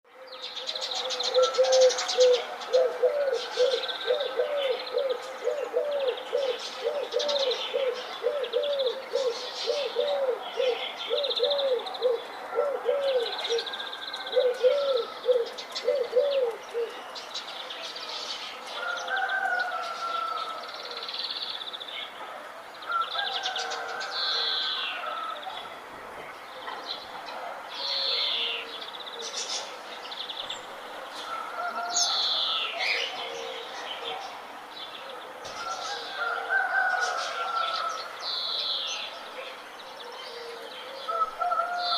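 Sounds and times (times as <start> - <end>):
soft wavering bird calls: 1.1 - 17.0.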